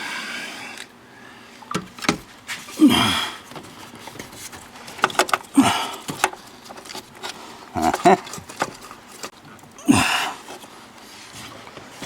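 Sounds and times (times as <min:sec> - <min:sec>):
clicks and knocks of connectors: 0:01.7 - 0:02.3, 0:03.5 - 0:09.8.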